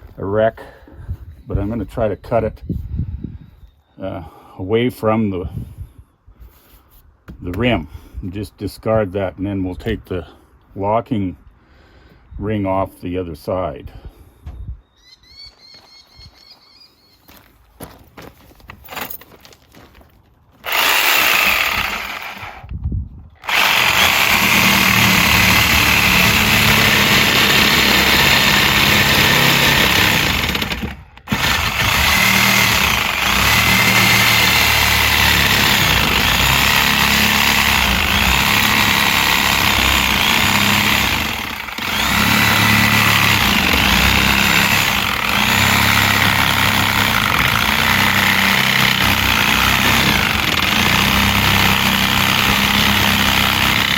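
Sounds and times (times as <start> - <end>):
reciprocating saw cutting rubber: 20.6 - 22.7, 23.4 - 53.9.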